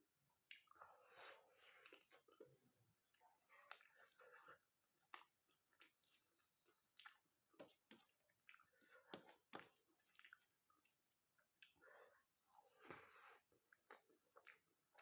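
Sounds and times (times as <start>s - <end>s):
close-miked chewing food: 0.3s - 15.0s
wet mouth clicks and smacks: 0.4s - 0.8s, 5.1s - 11.8s, 13.7s - 15.0s.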